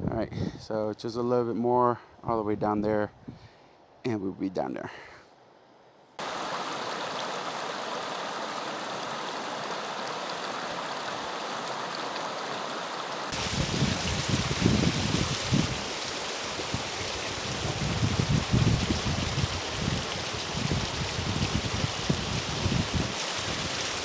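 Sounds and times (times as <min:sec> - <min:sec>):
creek water rushing: 0:06.2 - 0:24.0.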